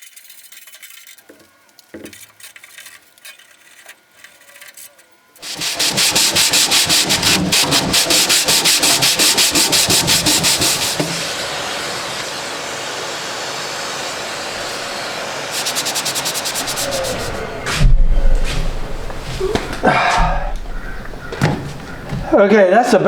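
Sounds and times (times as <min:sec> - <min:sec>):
scrubbing steel surface: 0:05.4 - 0:22.4.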